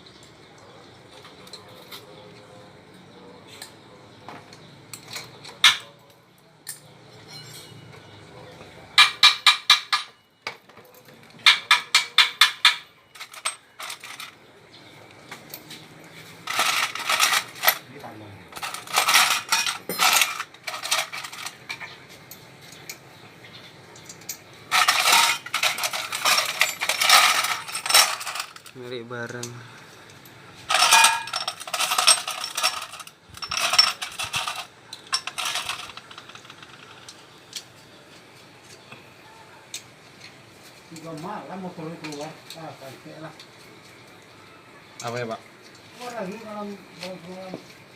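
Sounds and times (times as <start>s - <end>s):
metal clinking: 6.6s - 8.2s, 9.0s - 14.4s, 16.4s - 17.9s, 18.5s - 23.0s, 24.0s - 28.8s, 30.0s - 37.2s.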